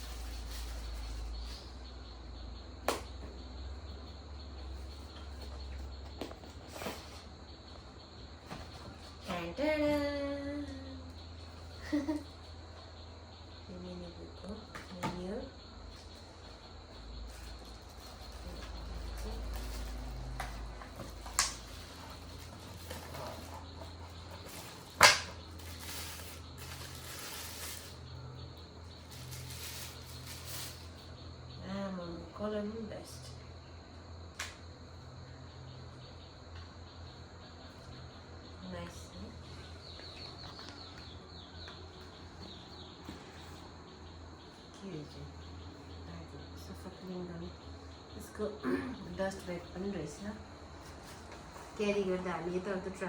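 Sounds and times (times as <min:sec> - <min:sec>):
packaging handling noise: 0:17.3 - 0:28.1, 0:29.0 - 0:31.0.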